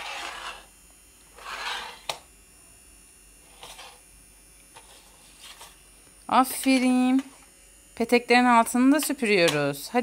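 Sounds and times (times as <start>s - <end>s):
toy vacuum cleaner swishing: 0.0s - 0.7s, 1.4s - 2.2s.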